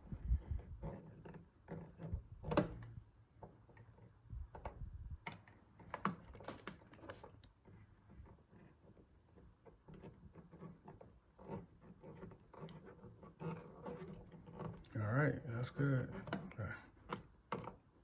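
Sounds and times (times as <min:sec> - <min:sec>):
screwdriver turning a screw: 0:08.2 - 0:15.0.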